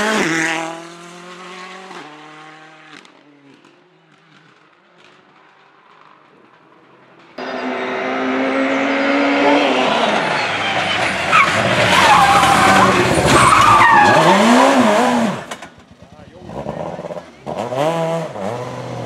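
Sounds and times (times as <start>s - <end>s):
rally car engine revving: 0.0s - 5.2s, 7.4s - 19.0s
tyre squeal: 7.4s - 14.9s.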